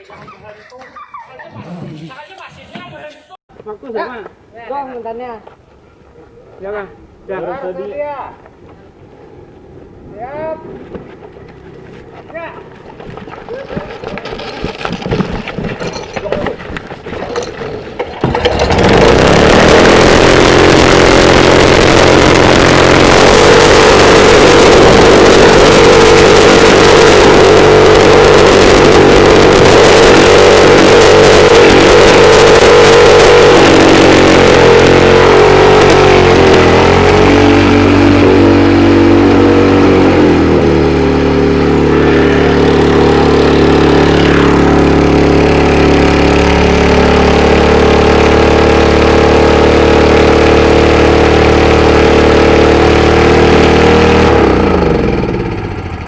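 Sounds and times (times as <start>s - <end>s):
engine running at high speed: 18.2s - 56.0s.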